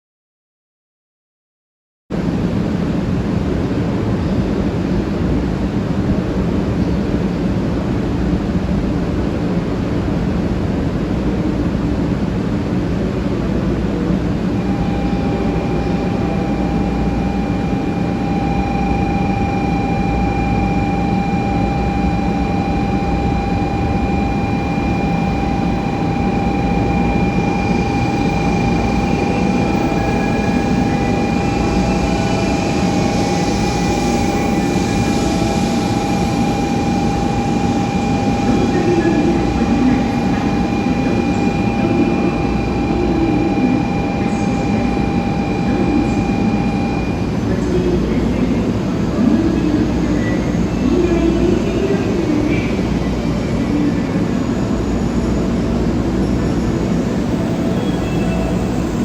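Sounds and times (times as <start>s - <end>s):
low rumble of standing trains: 2.1s - 59.0s
steady high whine: 2.1s - 59.0s.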